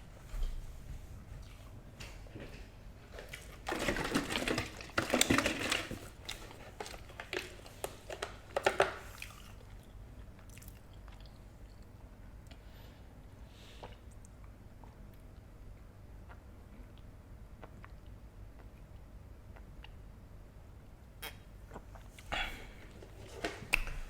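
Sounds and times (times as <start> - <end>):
person chewing food: 9.0 - 11.9, 21.3 - 24.0.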